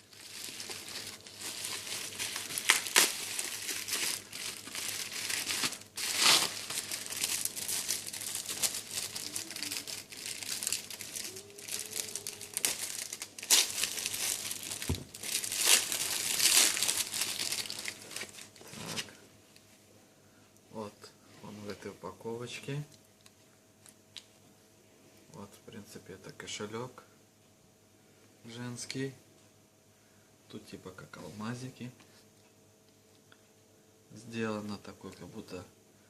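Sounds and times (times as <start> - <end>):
packaging crumpled and torn: 0.0 - 19.2.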